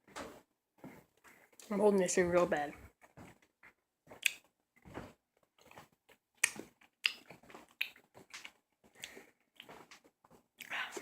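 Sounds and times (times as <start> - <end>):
person chewing and sucking candy: 4.1 - 4.6, 5.4 - 11.0.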